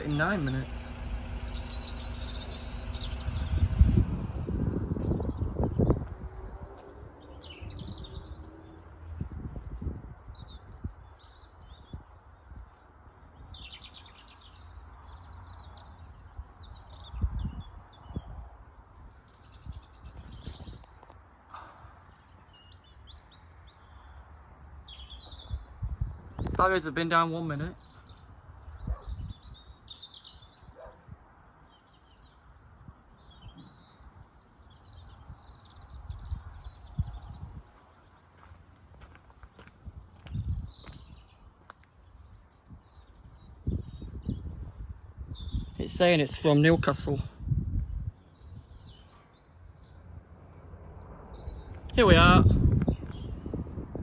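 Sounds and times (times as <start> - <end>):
steady low rumble: 0.0 - 6.6
small birds chirping: 0.0 - 9.3, 10.1 - 54.0
low microphone rumble: 0.0 - 10.3, 50.0 - 54.0.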